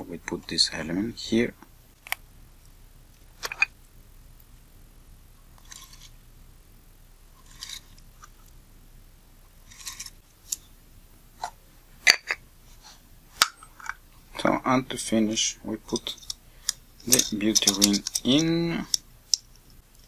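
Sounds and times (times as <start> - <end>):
scratchy rustles: 5.6 - 6.2, 7.3 - 8.5, 9.6 - 10.6
small lens parts clicking: 15.9 - 20.0.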